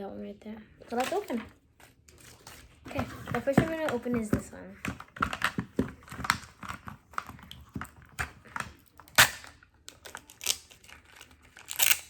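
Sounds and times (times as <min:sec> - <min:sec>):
plastic clicks and crackles: 0:00.9 - 0:12.0
loud plastic snap: 0:08.6 - 0:09.6.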